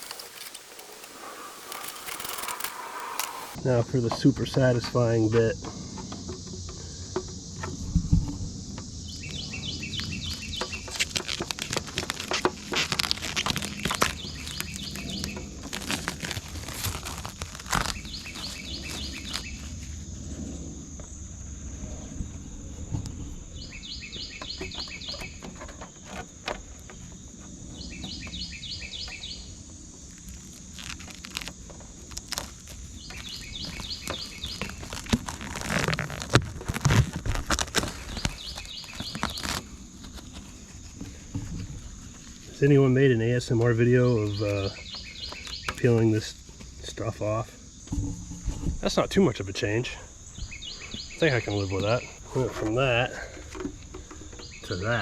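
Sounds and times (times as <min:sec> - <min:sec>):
plastic film crinkling: 0:00.0 - 0:03.6, 0:10.0 - 0:19.9, 0:30.1 - 0:42.5
insect chirping: 0:00.0 - 0:55.0.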